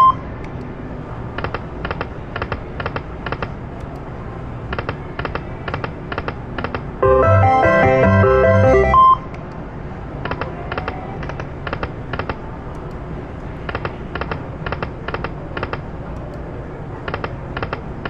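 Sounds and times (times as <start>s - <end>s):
slot machine electronic jingle: 7.0s - 9.2s.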